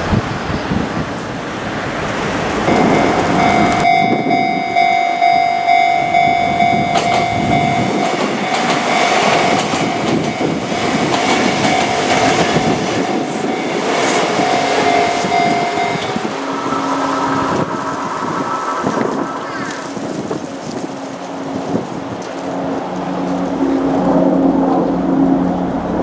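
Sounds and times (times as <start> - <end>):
train wheels clattering on rails: 2.0 - 17.8
crossing warning bell ringing: 2.7 - 19.5.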